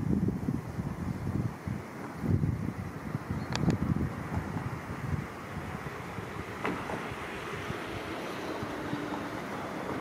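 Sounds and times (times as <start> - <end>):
wind buffeting microphone: 0.0 - 10.0
faint click: 3.5 - 3.8
river rushing: 3.9 - 10.0.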